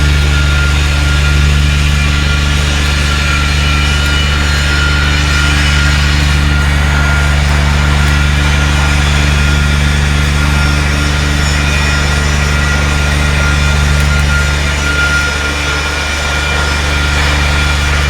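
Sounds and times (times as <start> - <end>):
welding machine humming: 0.0 - 18.0.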